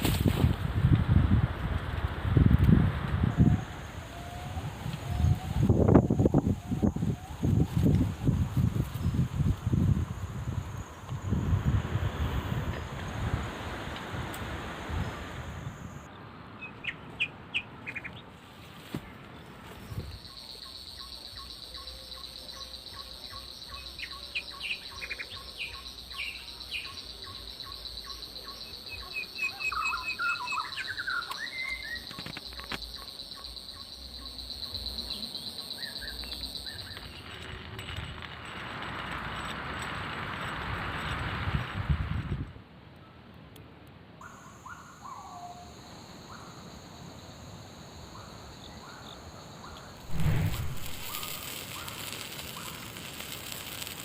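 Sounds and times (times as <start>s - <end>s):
insect drone: 0.0s - 16.1s, 19.7s - 41.9s, 44.2s - 54.0s
birds chirping: 15.9s - 18.3s
rushing noise: 50.1s - 54.0s.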